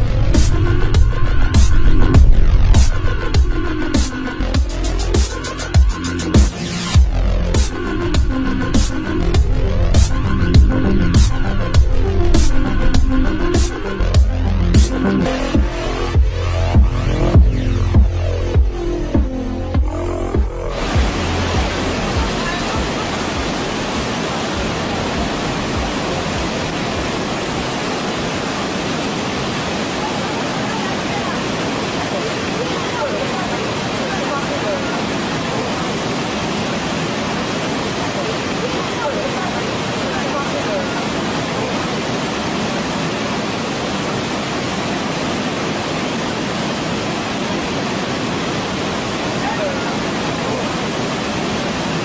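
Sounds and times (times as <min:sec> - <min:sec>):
waterfall rushing: 0:00.0 - 0:52.0.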